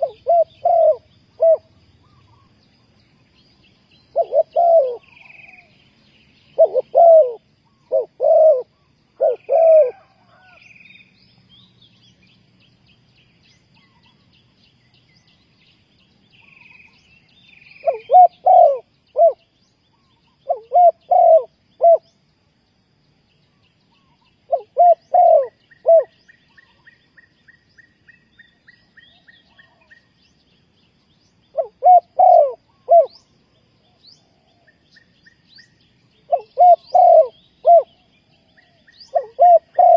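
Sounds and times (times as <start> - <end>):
dove cooing: 0.0 - 2.5, 4.1 - 5.7, 6.5 - 10.6, 17.7 - 19.5, 20.4 - 22.2, 24.5 - 26.2, 31.5 - 33.3, 36.3 - 39.9
small birds chirping: 0.0 - 39.9.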